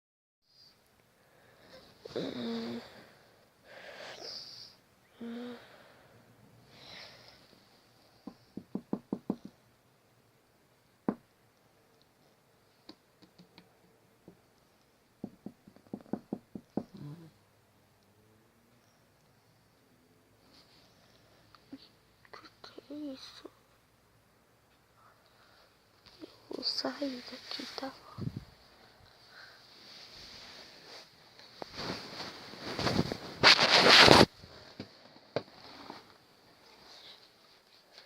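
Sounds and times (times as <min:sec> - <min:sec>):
wheezing snore-like breaths: 0:01.7 - 0:03.1
knocking: 0:08.3 - 0:09.5, 0:15.2 - 0:17.0.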